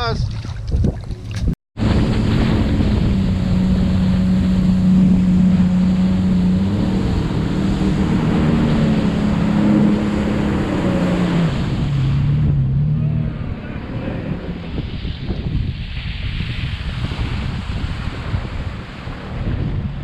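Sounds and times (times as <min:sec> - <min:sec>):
water rushing: 0:00.0 - 0:20.0
wind buffeting microphone: 0:00.0 - 0:20.0
jet ski engine running: 0:01.8 - 0:16.1.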